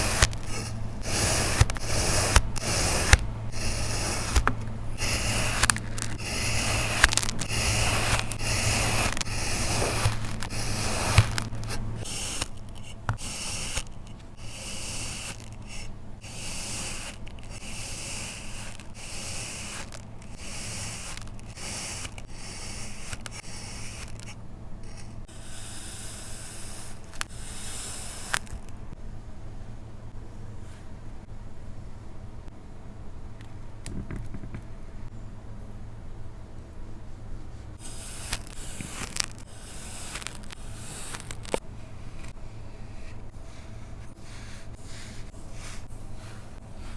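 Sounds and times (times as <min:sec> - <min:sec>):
sand scraping: 0:00.0 - 0:13.8
low steady hum: 0:00.0 - 0:46.9.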